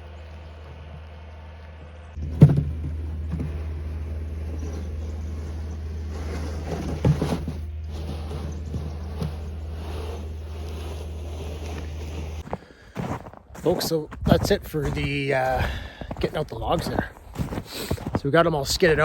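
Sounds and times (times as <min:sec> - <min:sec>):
vehicle engine running: 0:00.0 - 0:13.4.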